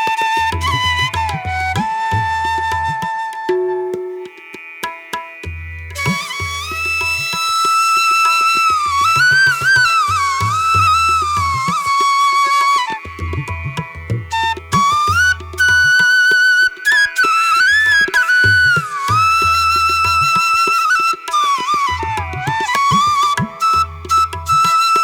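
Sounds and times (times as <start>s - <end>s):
bamboo flute melody: 0.0s - 4.6s, 5.9s - 25.0s
tabla drum strokes: 0.0s - 25.0s.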